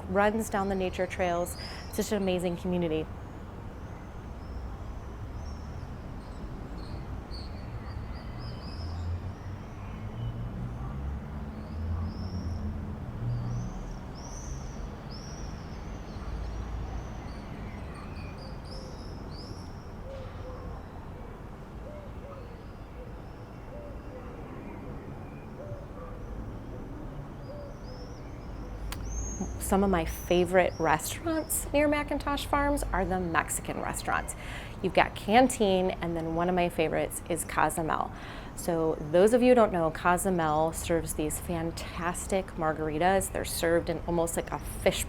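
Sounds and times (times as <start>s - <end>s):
birds chirping: 0.0s - 4.7s, 27.4s - 45.0s.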